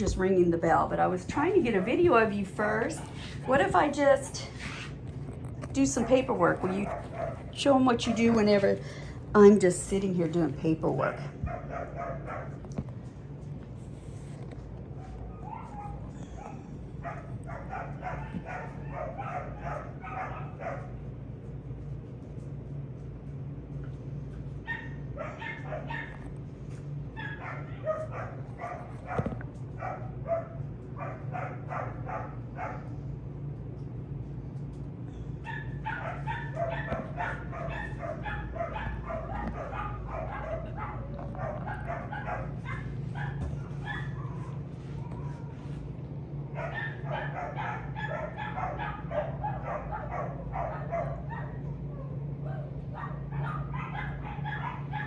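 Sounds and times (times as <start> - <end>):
steady low hum: 0.0 - 55.0
puppy whining and yipping: 15.3 - 17.4.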